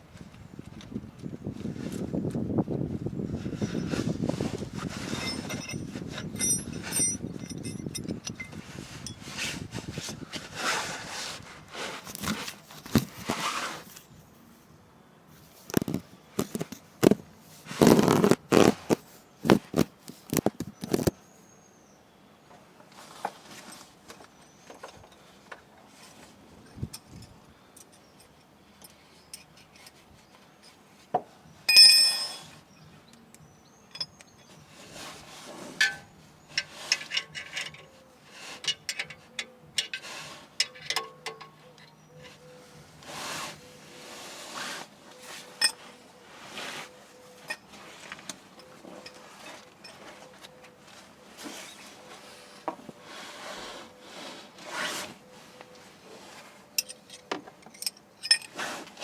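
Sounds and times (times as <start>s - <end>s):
metal tools knocking and scraping: 5.0s - 9.4s, 35.8s - 42.5s, 56.8s - 58.6s
bright ringing metal clink: 31.7s - 32.4s.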